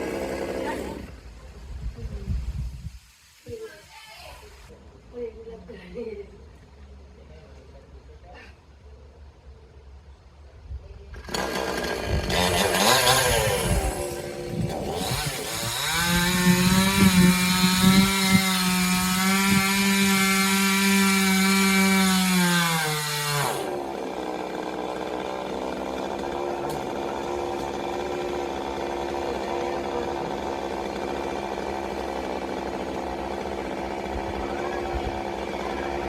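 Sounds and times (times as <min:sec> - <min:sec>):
chainsaw cutting wood: 0:00.0 - 0:01.2, 0:11.2 - 0:36.0
chainsaw idling: 0:00.0 - 0:01.2, 0:11.2 - 0:36.0.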